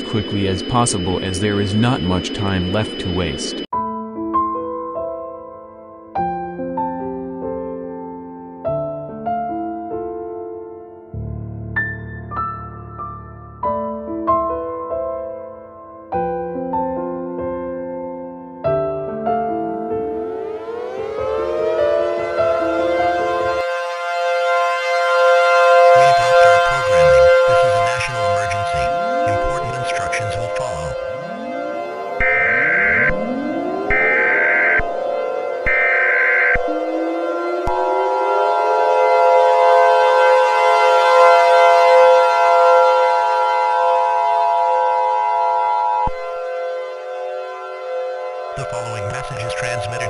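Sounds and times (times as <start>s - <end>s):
multi-tone siren: 0.0s - 3.7s, 19.4s - 50.0s
two-tone attention signal: 0.0s - 3.7s, 25.9s - 38.0s
low sounds: 25.9s - 38.3s.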